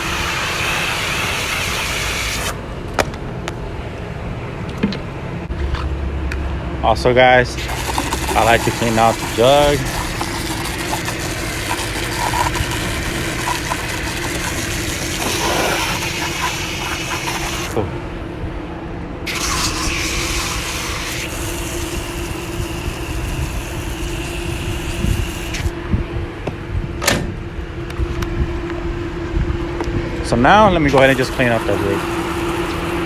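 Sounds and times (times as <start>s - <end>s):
water rushing through a jug: 0.0s - 2.6s, 7.5s - 17.8s, 19.3s - 25.7s, 31.0s - 33.0s
air-conditioning unit humming: 0.0s - 33.0s.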